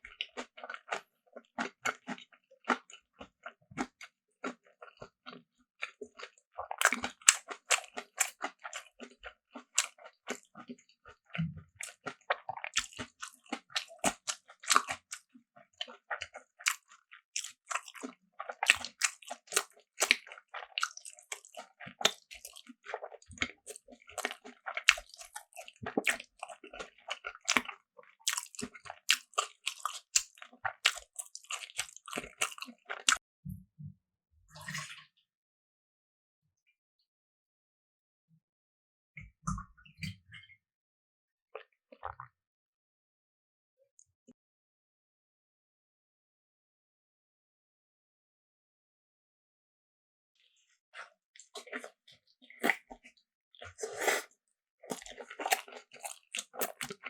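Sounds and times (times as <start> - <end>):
person chewing and crunching food: 0.0 - 33.2, 41.5 - 42.3, 51.0 - 57.0.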